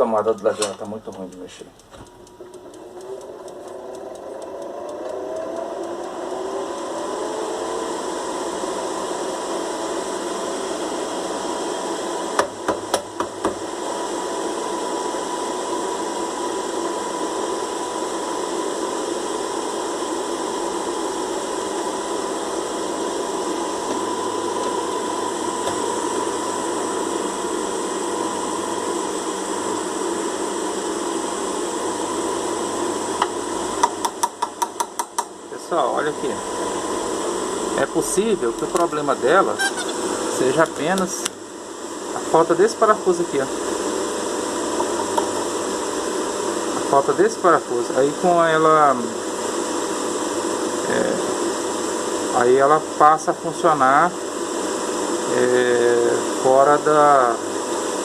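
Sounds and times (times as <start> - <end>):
fan motor whirring: 0.0 - 58.0
sharp clicks: 0.3 - 6.5.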